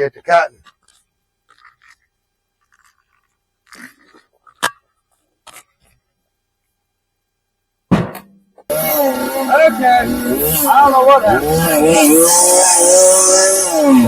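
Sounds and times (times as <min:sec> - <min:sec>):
small handling noises: 0:00.0 - 0:06.8
man drinking water: 0:00.6 - 0:05.8.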